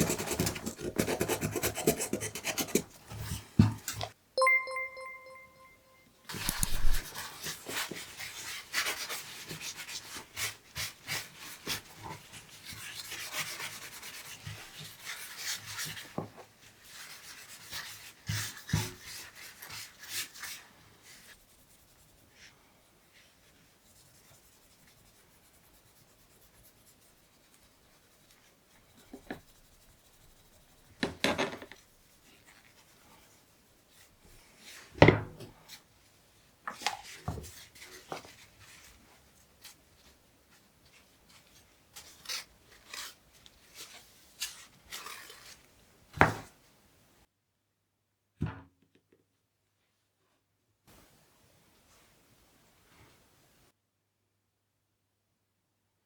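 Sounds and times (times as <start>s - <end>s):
hand rubbing on knife: 6.4s - 7.1s.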